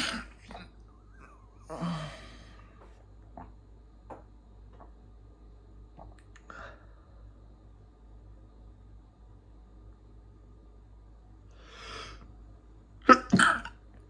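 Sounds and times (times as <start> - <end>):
man sighing heavily: 1.7 - 2.6.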